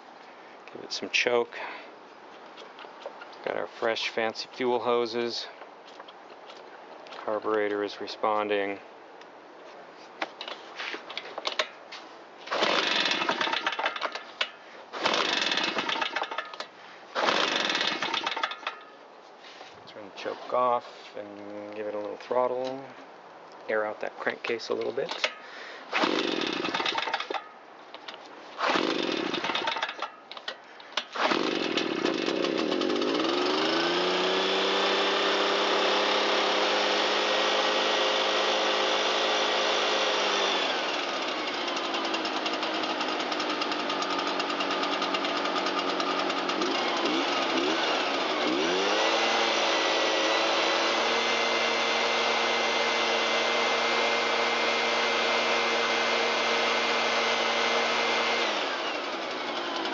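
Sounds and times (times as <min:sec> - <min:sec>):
leaf blower engine running: 0:12.5 - 0:14.2, 0:15.0 - 0:16.6, 0:17.2 - 0:18.8, 0:25.9 - 0:27.4, 0:28.6 - 0:30.1, 0:31.2 - 0:59.9.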